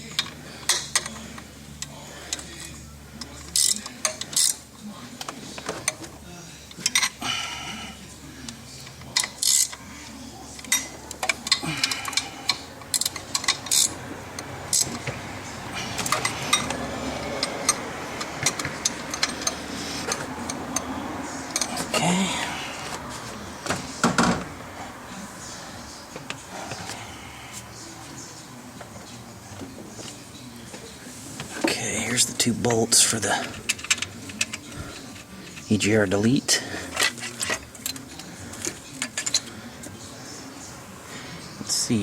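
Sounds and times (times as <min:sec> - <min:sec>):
metal tools clinking and knocking: 0:15.9 - 0:16.8, 0:17.4 - 0:20.9.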